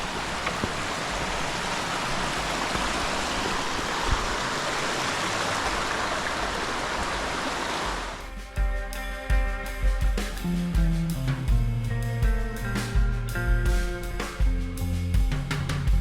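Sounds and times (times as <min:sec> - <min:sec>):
rushing water: 0:00.0 - 0:08.4.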